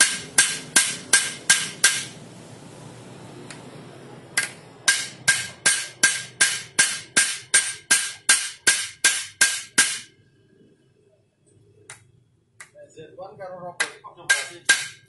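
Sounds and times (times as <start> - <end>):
hammer striking metal: 0.0 - 2.2, 4.4 - 10.2, 13.8 - 15.0.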